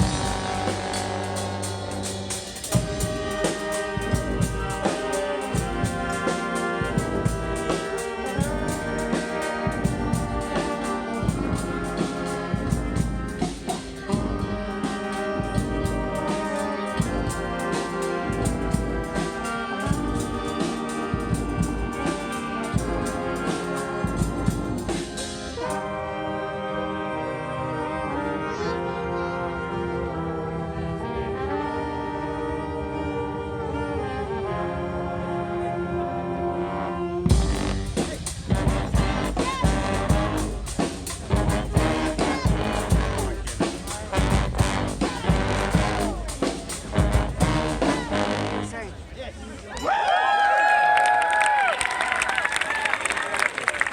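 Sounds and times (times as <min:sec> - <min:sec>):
drum beat: 0:00.0 - 0:25.4, 0:37.3 - 0:48.2
horns holding a chord: 0:00.0 - 0:49.2
brass band playing: 0:00.0 - 0:49.4.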